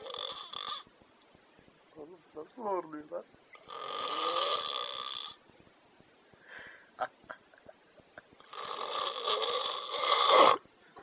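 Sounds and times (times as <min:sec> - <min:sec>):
man snoring heavily: 0:00.0 - 0:00.9, 0:03.7 - 0:05.4, 0:08.5 - 0:10.6
soft breath: 0:06.2 - 0:07.0.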